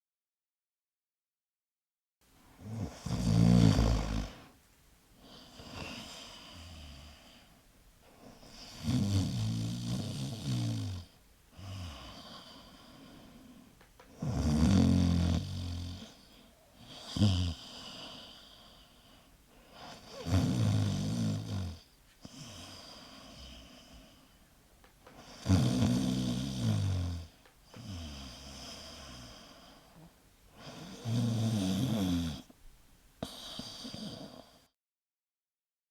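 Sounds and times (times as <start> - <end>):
dog snoring: 2.6 - 4.5, 5.2 - 7.4, 8.1 - 13.4, 14.1 - 18.8, 19.6 - 24.1, 25.1 - 32.5, 33.2 - 34.7.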